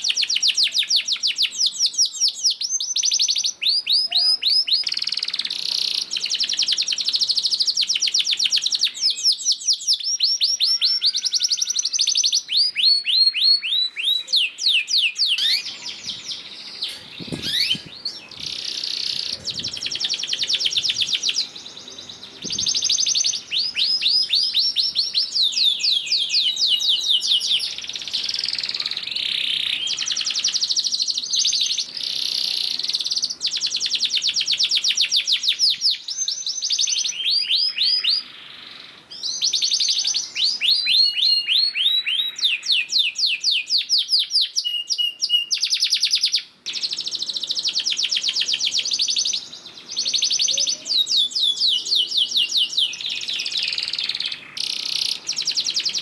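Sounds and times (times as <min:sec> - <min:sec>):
canary singing trills: 0:00.0 - 0:56.0.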